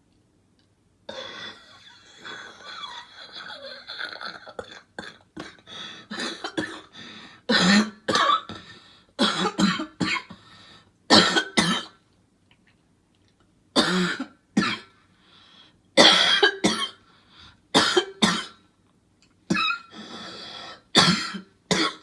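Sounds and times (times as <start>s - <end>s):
person coughing harshly: 1.1s - 6.9s, 7.5s - 10.4s, 11.1s - 12.0s, 13.8s - 14.9s, 16.0s - 17.0s, 17.8s - 18.6s, 19.5s - 19.9s, 20.8s - 22.0s.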